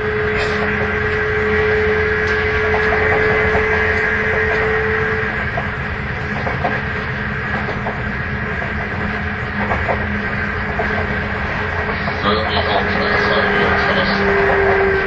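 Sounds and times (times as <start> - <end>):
electric train rumble: 0.0 - 15.0
high jet-like whine: 9.3 - 15.0.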